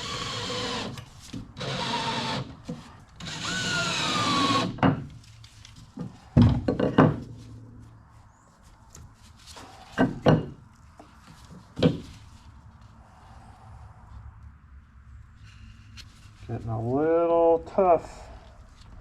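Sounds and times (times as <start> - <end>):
power tool whine: 0.0 - 1.0, 1.6 - 2.6, 3.2 - 4.8.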